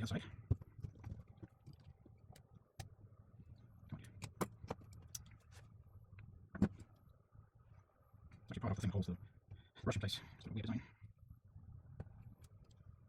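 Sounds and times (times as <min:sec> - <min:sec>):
faint low hum: 0:00.0 - 0:13.0.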